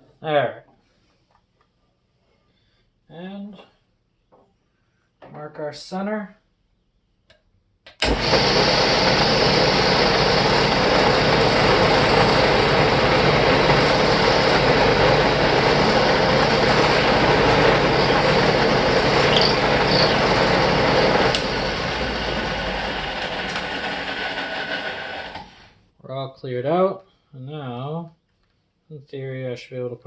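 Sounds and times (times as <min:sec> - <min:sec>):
drill press boring into wood: 0:08.0 - 0:25.8.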